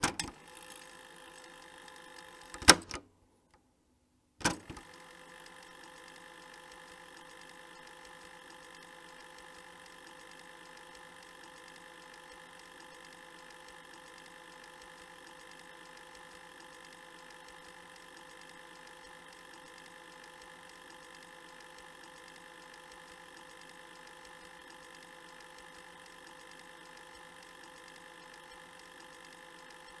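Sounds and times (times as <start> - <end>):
cassette player keys clicking: 0.0 - 0.4, 2.6 - 3.1, 4.4 - 4.9
tape mechanism whirring: 2.5 - 3.0.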